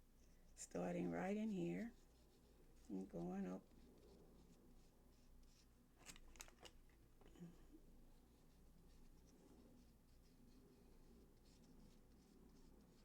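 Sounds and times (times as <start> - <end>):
faint ticks and scratches: 0.0 - 13.0
low room hum: 0.0 - 13.0.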